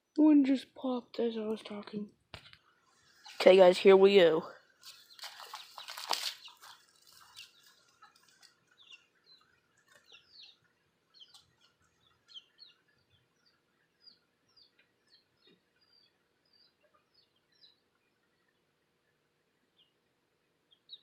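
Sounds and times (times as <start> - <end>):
wild birds chirping: 0.0 - 21.0
handling rustle: 4.8 - 8.6.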